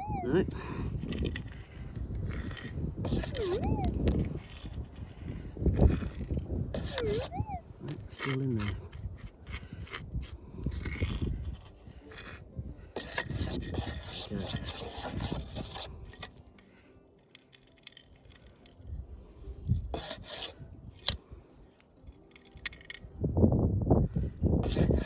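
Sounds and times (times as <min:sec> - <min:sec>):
gravel scraping in a scoop: 0:00.9 - 0:16.4, 0:19.9 - 0:21.2, 0:24.6 - 0:25.0.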